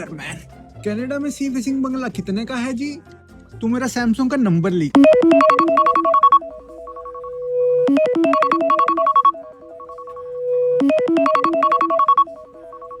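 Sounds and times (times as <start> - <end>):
electronic ringtone melody: 5.0 - 13.0.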